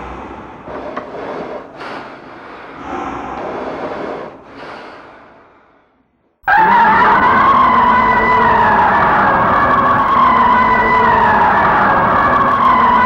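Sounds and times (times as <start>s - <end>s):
monster roar: 6.4s - 13.0s.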